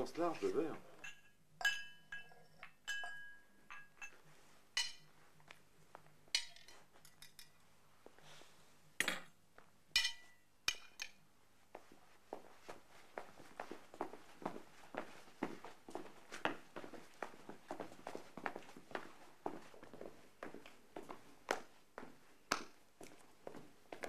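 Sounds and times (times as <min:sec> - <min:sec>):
glassware clinking: 0:01.0 - 0:04.2, 0:04.8 - 0:05.1, 0:06.4 - 0:07.5, 0:10.0 - 0:11.2.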